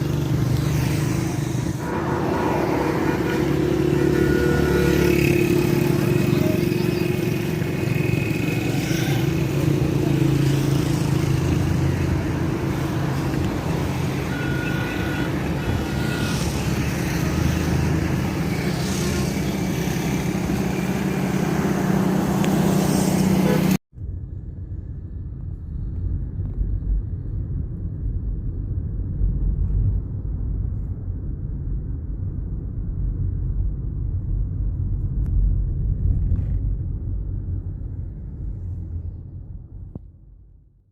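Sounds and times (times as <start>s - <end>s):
road traffic: 0.0s - 40.7s
dull low-pitched noise: 23.9s - 40.7s.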